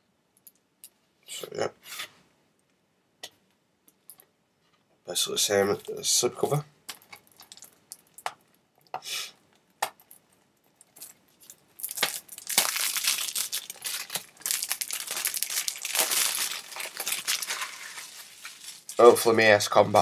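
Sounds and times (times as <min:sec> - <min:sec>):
plastic packaging crinkling: 0:06.9 - 0:08.3, 0:10.0 - 0:19.3.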